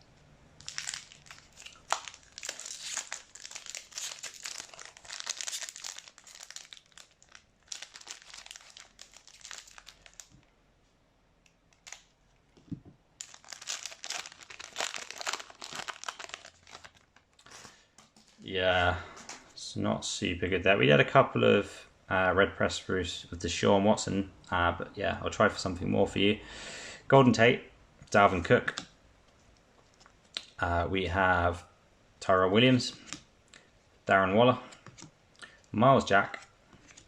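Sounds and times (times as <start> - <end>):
foil wrapper crinkling and tearing: 0.6 - 10.4, 11.8 - 12.1, 13.2 - 18.4.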